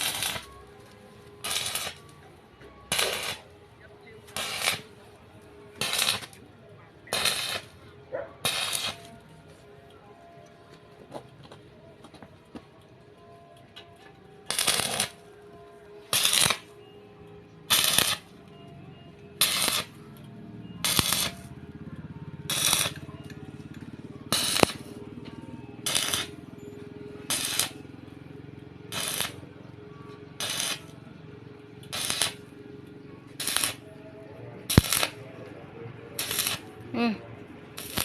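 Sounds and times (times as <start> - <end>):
welding arc crackling hiss: 0.0 - 0.5, 1.4 - 2.0, 2.9 - 3.4, 4.4 - 4.8, 5.8 - 6.3, 7.1 - 7.7, 8.4 - 9.1, 14.5 - 15.2, 16.1 - 16.6, 17.7 - 18.2, 19.4 - 19.9, 20.8 - 21.4, 22.5 - 23.0, 24.3 - 24.8, 25.8 - 26.3, 27.3 - 27.8, 28.9 - 29.4, 30.4 - 30.8, 31.9 - 32.4, 33.4 - 33.8, 34.7 - 35.2, 36.2 - 36.6, 37.8 - 38.0.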